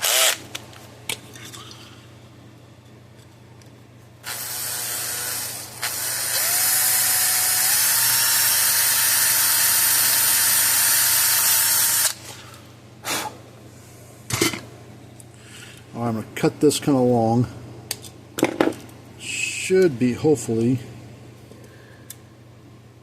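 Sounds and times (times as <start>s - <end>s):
small electric drill boring: 0.0s - 0.4s, 4.2s - 12.2s.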